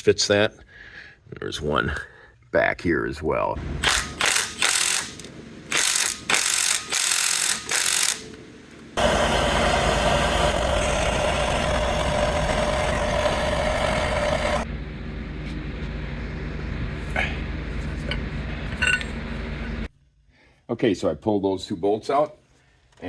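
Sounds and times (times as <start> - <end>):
power wrench on bolts: 3.8 - 8.3, 9.0 - 14.6.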